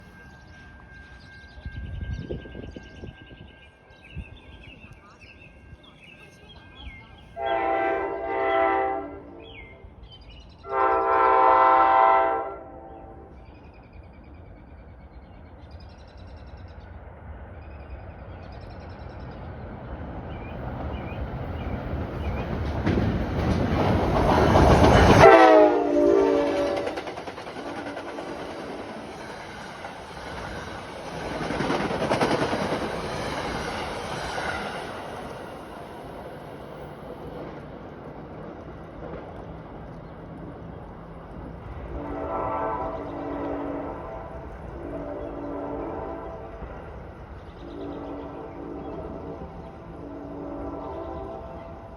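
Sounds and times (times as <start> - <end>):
train rumbling: 0.0 - 51.9
train horn blasts: 7.4 - 9.8, 10.7 - 13.4, 24.4 - 28.9, 41.8 - 46.8, 47.6 - 51.9.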